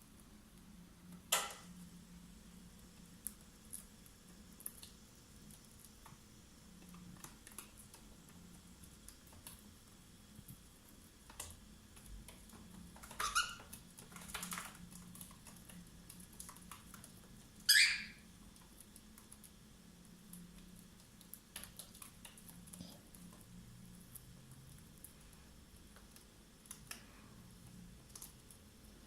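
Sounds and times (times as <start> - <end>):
birds clicking and tapping: 11.3 - 19.6
bird chirp: 17.7 - 18.2.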